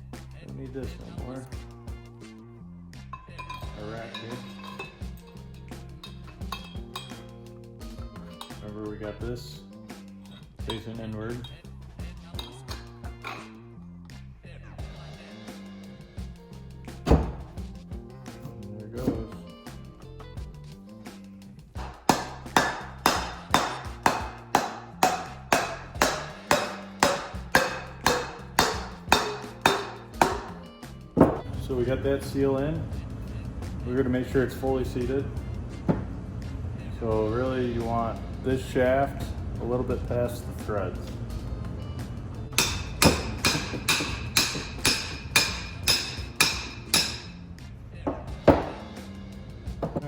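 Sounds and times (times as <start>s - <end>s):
hammer tapping on metal: 21.8s - 30.6s, 42.6s - 47.4s.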